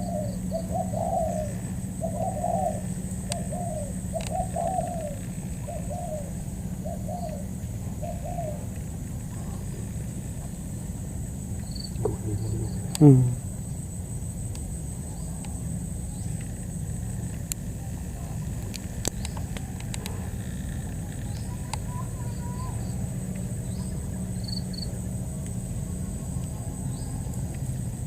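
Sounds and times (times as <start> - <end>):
high-pitched insect drone: 0.0 - 17.2, 17.8 - 28.0
low steady rumble: 0.0 - 28.0
faint bird chirps: 18.1 - 25.0.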